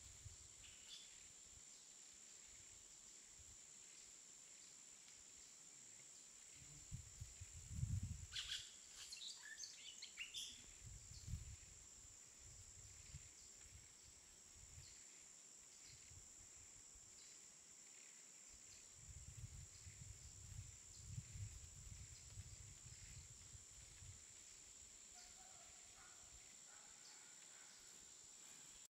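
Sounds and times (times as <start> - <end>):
high insect drone: 0.0 - 28.9
soft whistled calls: 8.3 - 10.7
bird calls: 8.4 - 10.7.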